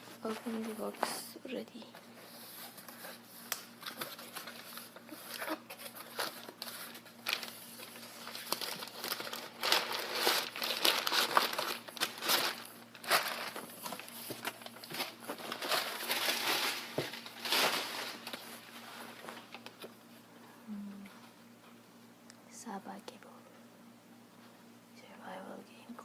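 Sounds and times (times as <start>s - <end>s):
packaging crinkling and rustling: 2.6s - 20.0s.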